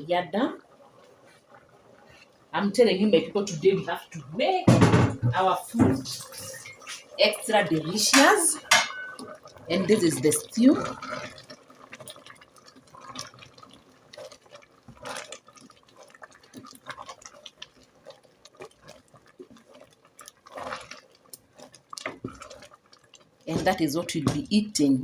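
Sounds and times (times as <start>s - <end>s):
stew sloshing and dripping: 0.6s - 4.3s, 5.7s - 25.0s
spoon clinking against pot: 8.2s - 9.3s.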